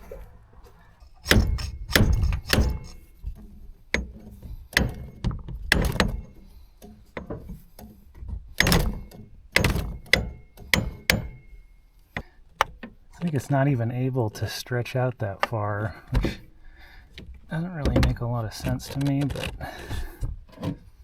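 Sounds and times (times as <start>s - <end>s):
hard metallic knocks: 1.2s - 3.2s, 3.9s - 6.4s, 8.6s - 11.6s.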